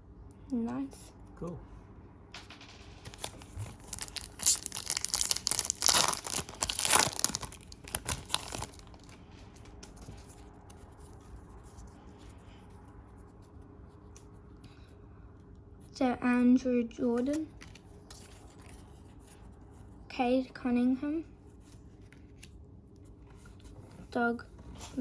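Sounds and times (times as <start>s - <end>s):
foil wrapper tearing and crinkling: 3.1s - 9.2s.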